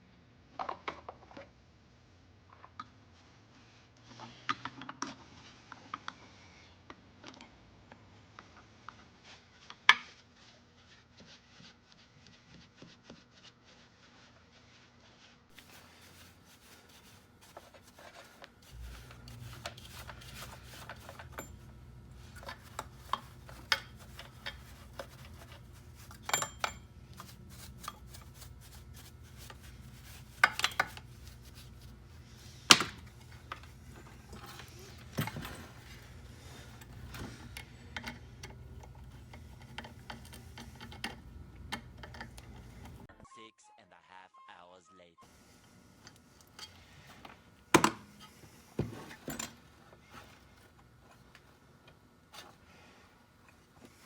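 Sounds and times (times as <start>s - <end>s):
low steady hum: 15.5s - 43.2s
metal tools clicking and clanking: 17.4s - 43.1s, 46.0s - 50.4s.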